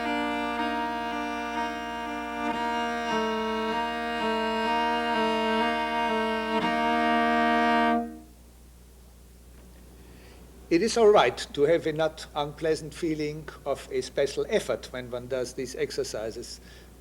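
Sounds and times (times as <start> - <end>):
cello double stops: 0.0 - 8.3.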